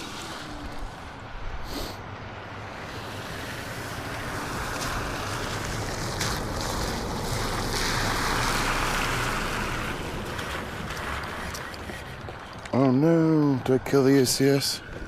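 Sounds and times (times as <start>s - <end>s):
rc car splashing through mud: 0.0s - 1.3s, 3.0s - 12.2s.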